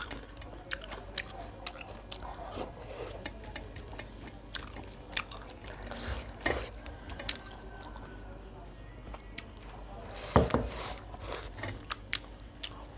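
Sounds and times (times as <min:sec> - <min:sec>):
person chewing food: 0:00.0 - 0:08.1, 0:10.7 - 0:12.9.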